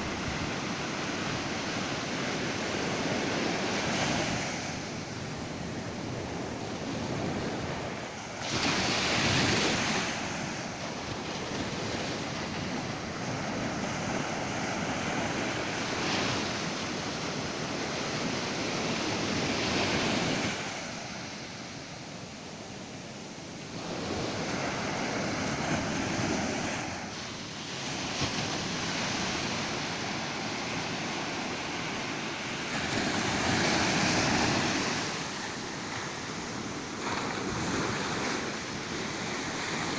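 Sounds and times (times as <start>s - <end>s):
wind buffeting microphone: 0.0s - 22.0s
ocean waves breaking: 0.0s - 39.9s.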